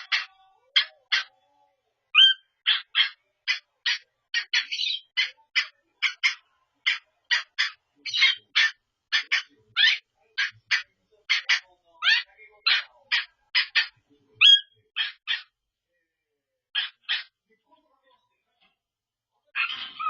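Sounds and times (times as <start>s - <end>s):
cockatiel calling: 0.0s - 1.3s, 2.1s - 15.6s, 16.8s - 17.3s.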